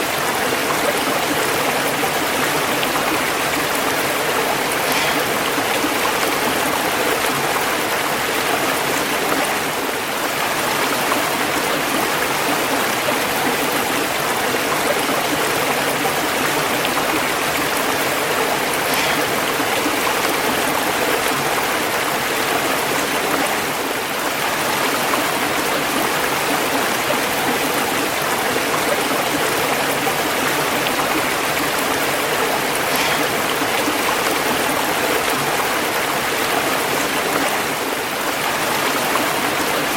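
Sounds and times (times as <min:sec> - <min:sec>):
water rushing over rocks: 0:00.0 - 0:39.9.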